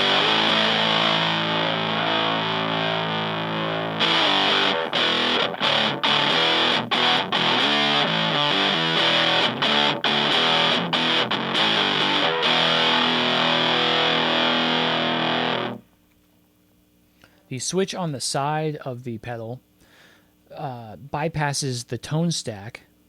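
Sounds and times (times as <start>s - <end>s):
fuzzed electric guitar chords: 0.0s - 15.9s.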